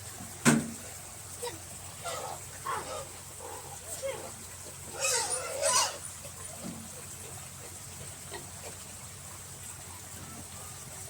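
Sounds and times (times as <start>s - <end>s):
pigs squealing: 1.4s - 6.6s.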